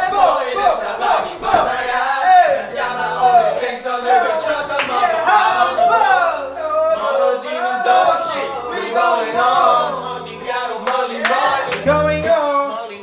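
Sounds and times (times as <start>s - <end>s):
man singing melismatic melody: 2.4s - 5.2s, 6.6s - 13.0s
backing track with low bass: 9.3s - 12.5s.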